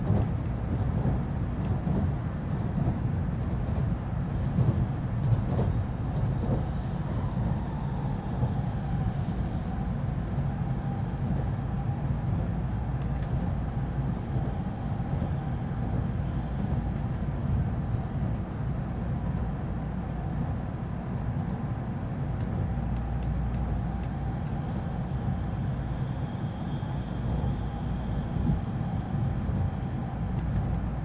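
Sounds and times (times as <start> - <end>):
train rumble inside passenger car: 0.0 - 31.0.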